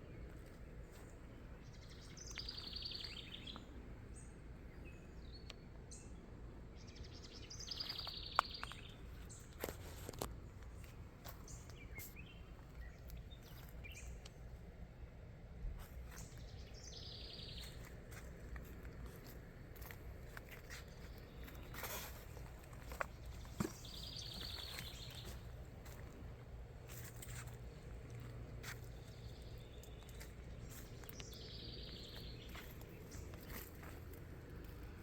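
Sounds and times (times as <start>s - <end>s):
steady low rumble: 8.6s - 35.0s.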